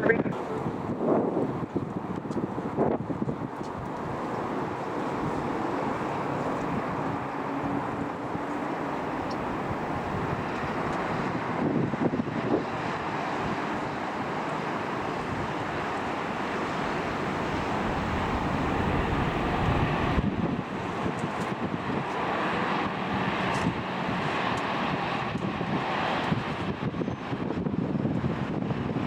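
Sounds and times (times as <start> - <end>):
jet engines rumbling: 0.0 - 29.0
wind buffeting microphone: 0.0 - 29.0.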